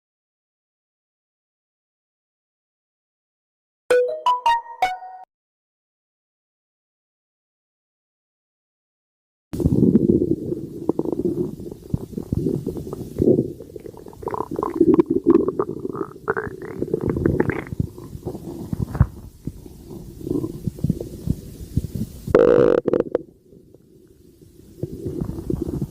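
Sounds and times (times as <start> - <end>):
stomach growling: 9.6 - 25.9.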